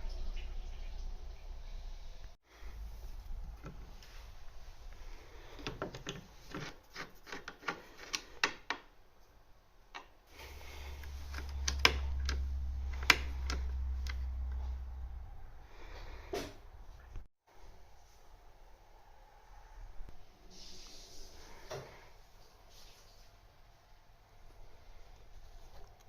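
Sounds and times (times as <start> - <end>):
knocks and clicks of handling: 5.5 - 8.9, 11.0 - 14.6
low rumble: 10.5 - 17.2.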